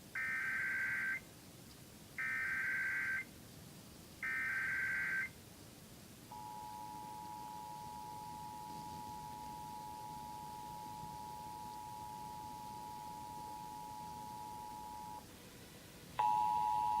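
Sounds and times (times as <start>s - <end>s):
two-tone attention signal: 6.3s - 15.2s, 16.2s - 17.0s.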